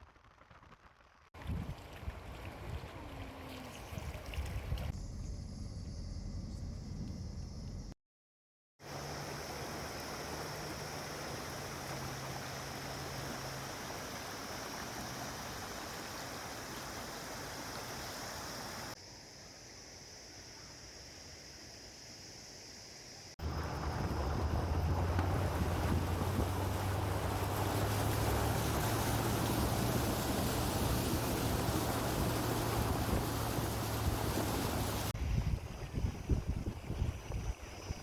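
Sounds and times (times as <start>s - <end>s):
water rushing down a stream: 0.0s - 5.0s, 8.8s - 19.0s, 23.4s - 38.0s.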